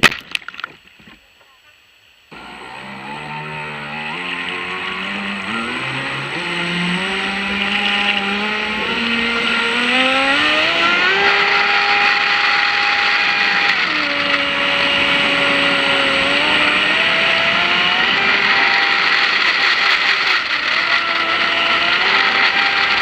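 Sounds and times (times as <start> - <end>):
steady hiss: 0.7 - 2.3
electric motor whining: 2.3 - 23.0.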